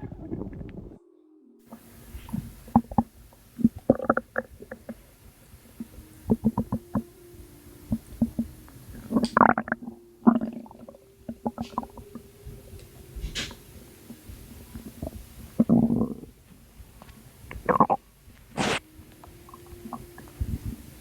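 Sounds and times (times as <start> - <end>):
stomach gurgling: 0.0 - 1.0, 1.7 - 7.2, 7.9 - 12.7, 14.3 - 18.9.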